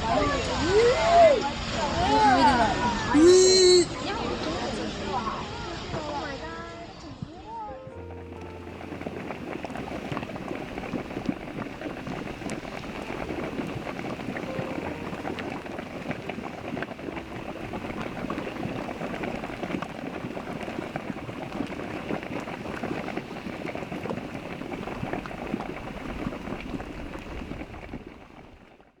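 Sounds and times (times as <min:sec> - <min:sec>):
hot pool boiling and bubbling: 0:08.0 - 0:29.0.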